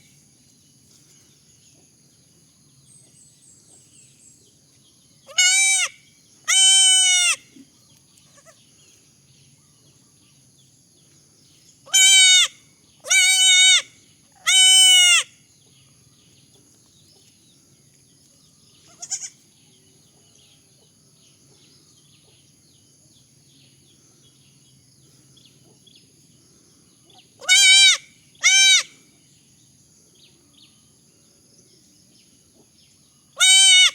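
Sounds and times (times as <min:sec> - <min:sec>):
baby goat bleating: 0:05.3 - 0:07.5, 0:08.3 - 0:08.6, 0:11.9 - 0:15.2, 0:18.9 - 0:19.4, 0:27.4 - 0:28.9, 0:33.4 - 0:33.9.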